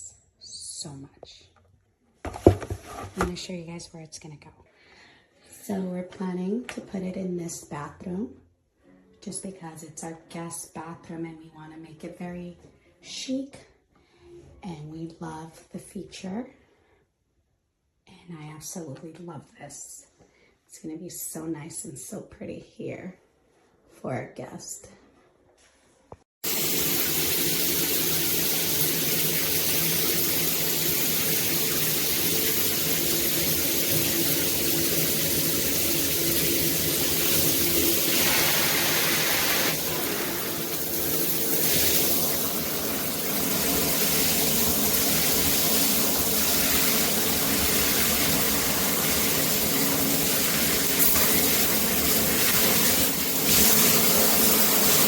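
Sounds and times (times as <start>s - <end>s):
shower water spraying: 26.4s - 55.0s.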